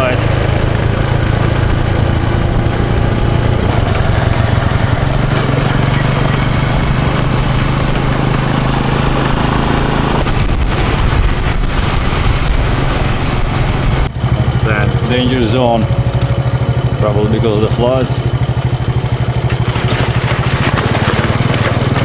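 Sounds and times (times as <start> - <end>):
motorcycle engine running: 0.0 - 22.0
wind noise on microphone: 10.2 - 14.2.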